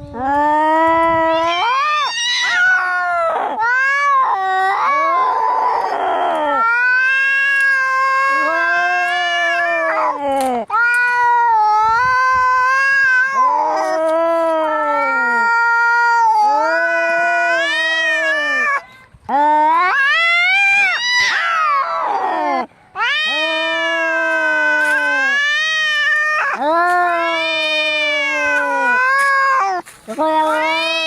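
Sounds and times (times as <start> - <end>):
cats yowling in a fight: 0.8 - 18.8, 19.5 - 31.0
cat harsh rasping cry: 1.3 - 5.9, 19.9 - 31.0.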